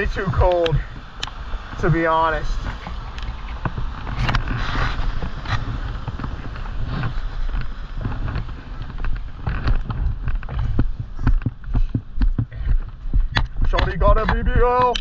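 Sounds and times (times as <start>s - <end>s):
wind rumbling on microphone: 0.0s - 15.0s
taps and knocks: 9.1s - 15.0s.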